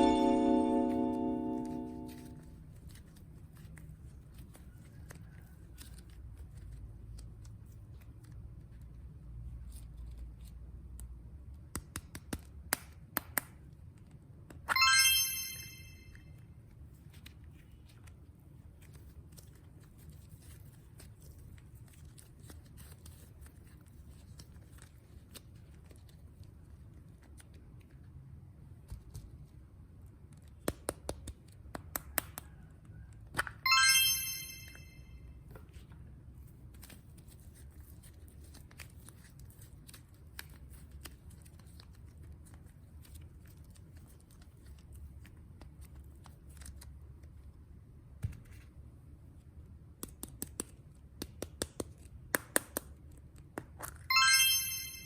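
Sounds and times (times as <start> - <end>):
bright chime rising in pitch: 0.0 - 2.4, 14.7 - 16.2, 33.7 - 35.0, 54.1 - 55.0.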